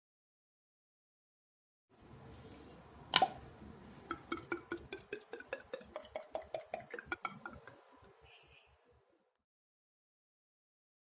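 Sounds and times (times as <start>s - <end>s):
beatbox mouth clicks: 4.1s - 7.8s.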